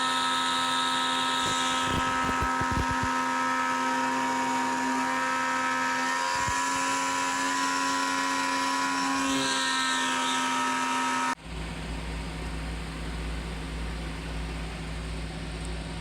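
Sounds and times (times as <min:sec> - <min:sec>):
router spindle milling aluminum: 0:00.0 - 0:11.4
fan-like hum: 0:00.0 - 0:16.0.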